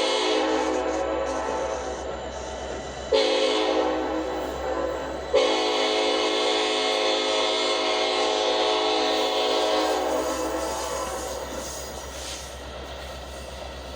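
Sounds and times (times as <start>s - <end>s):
locomotive horn blasts: 0.0s - 1.9s, 3.1s - 11.4s.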